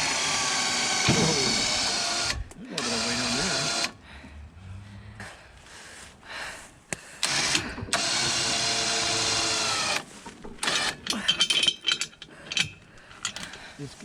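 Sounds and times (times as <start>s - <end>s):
electric winch motor whine: 0.0s - 4.0s, 7.2s - 11.2s
chain clinking and rattling: 10.4s - 13.9s.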